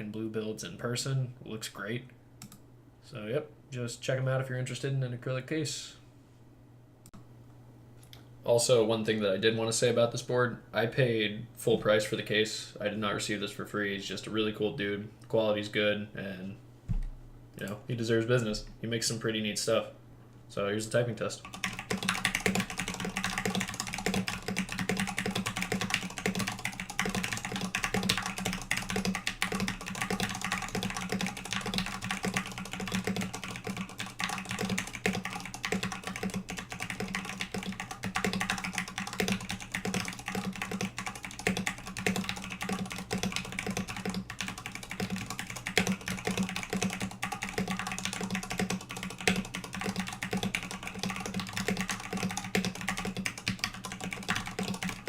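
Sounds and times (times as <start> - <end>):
steady low hum: 0.0 - 55.0
typing on mechanical keyboard: 21.4 - 55.0.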